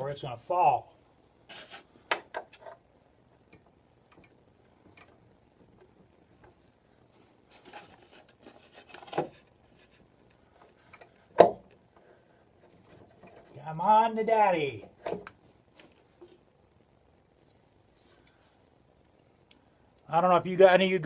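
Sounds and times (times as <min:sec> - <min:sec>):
clicks and rustling of handling: 0:03.5 - 0:13.6.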